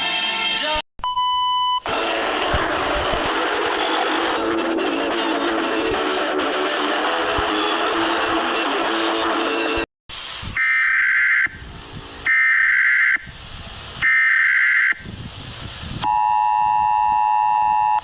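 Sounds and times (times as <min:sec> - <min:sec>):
guitar music: 0:01.9 - 0:09.8
static: 0:01.9 - 0:11.5
hiss: 0:10.1 - 0:12.4, 0:13.2 - 0:14.1, 0:15.0 - 0:16.0
screechy data header tones: 0:10.6 - 0:11.6, 0:12.2 - 0:13.3.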